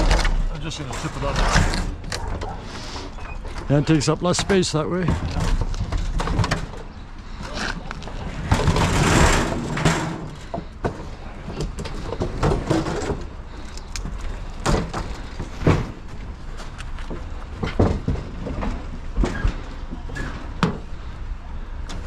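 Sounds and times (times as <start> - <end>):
metal appliances knocking and scraping: 8.3 - 13.3.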